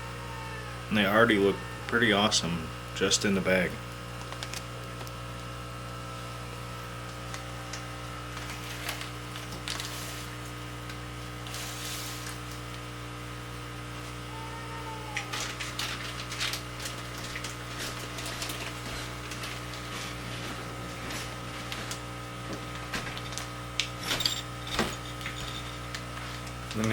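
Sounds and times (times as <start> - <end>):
electrical hum of equipment: 0.0 - 26.9
plastic bags rustling and clicking: 4.2 - 5.2, 7.0 - 12.7, 15.2 - 26.9.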